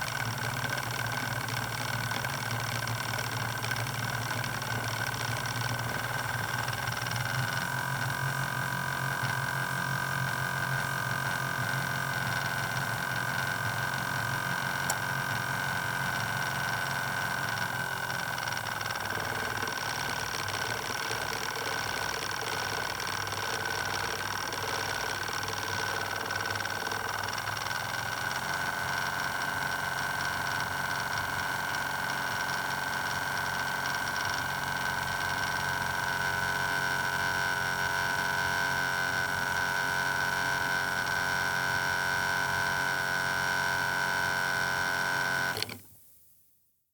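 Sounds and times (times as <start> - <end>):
low mechanical buzz: 0.0 - 46.0.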